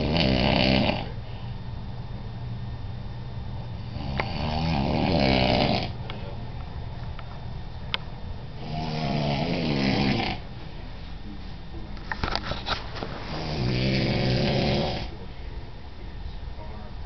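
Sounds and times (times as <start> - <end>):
man snoring: 0.0 - 1.2, 3.8 - 6.0, 8.6 - 10.5, 13.3 - 15.2
steady low hum: 0.0 - 17.0.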